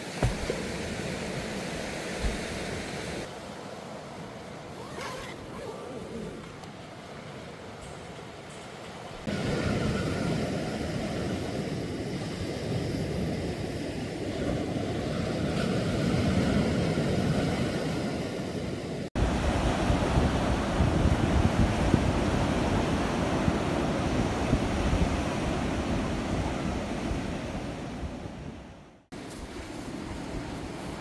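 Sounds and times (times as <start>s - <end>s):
sea waves washing onto beach: 0.0s - 4.9s, 5.7s - 28.2s
wind buffeting microphone: 9.1s - 28.6s.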